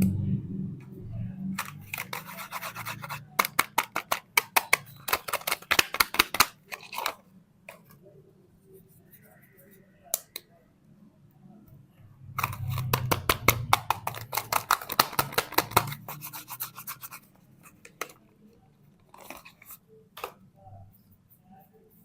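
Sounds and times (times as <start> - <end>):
soap packaging crackling: 1.6 - 7.2, 12.4 - 17.2.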